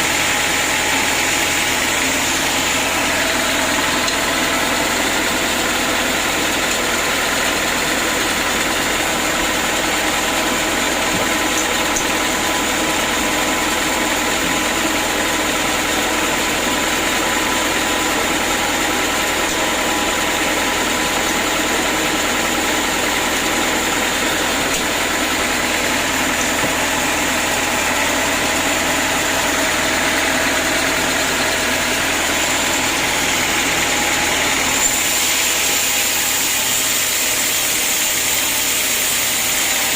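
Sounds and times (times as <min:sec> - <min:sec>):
steady machine whining tones: 0:00.0 - 0:08.5, 0:17.3 - 0:39.9
sawmill machinery hum: 0:00.0 - 0:39.9.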